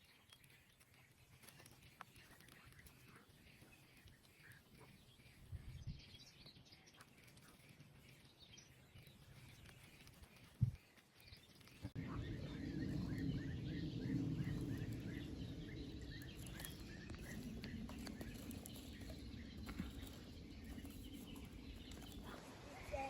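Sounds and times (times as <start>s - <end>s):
birds chirping: 0.0s - 23.0s
low rushing noise: 11.8s - 23.0s.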